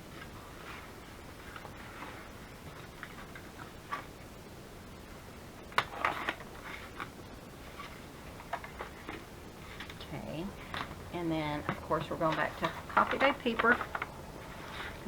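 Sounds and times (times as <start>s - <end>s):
paper handling: 11.6s - 15.0s.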